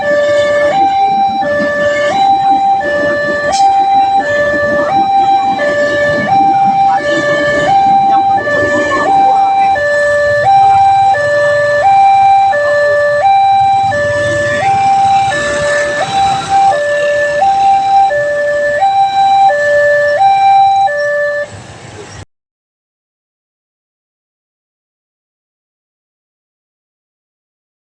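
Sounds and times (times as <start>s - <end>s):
two-tone crossing warning siren: 0.0s - 21.9s.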